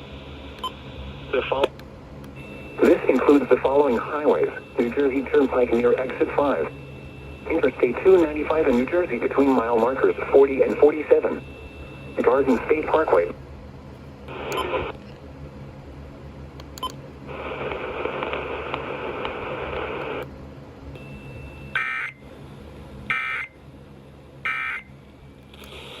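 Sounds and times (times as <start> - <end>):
radio hiss: 0.1 - 1.7, 2.8 - 6.8, 7.4 - 13.4, 14.3 - 14.9, 17.3 - 20.2, 25.6 - 26.0.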